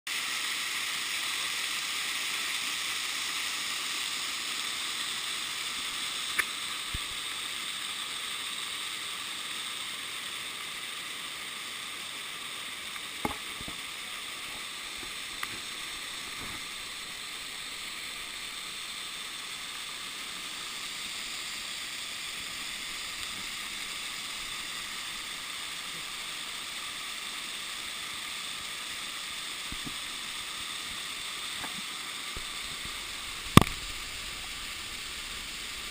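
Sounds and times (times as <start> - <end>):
waterfall rushing: 13.1 - 35.9.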